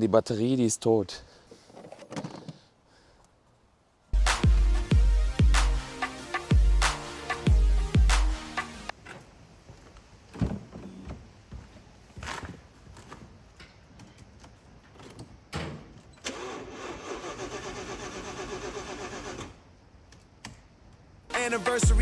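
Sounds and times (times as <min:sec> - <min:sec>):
starter motor cranking engine: 0:16.2 - 0:19.6.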